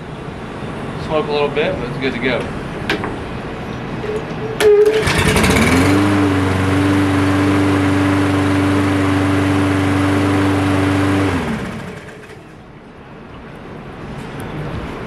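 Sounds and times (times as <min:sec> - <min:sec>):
lawn mower engine running: 0:04.6 - 0:12.6.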